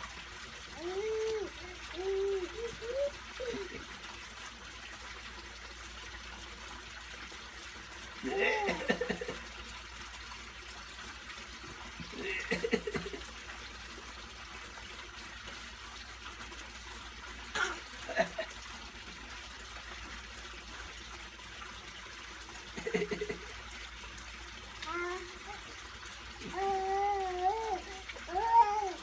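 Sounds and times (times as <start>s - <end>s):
child fake coughing: 8.2s - 9.4s, 12.1s - 13.2s, 17.6s - 18.4s.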